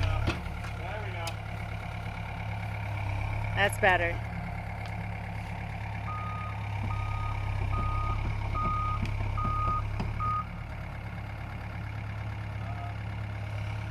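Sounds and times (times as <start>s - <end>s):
low engine hum: 0.0s - 13.9s
reversing alarm beeping: 6.1s - 10.5s.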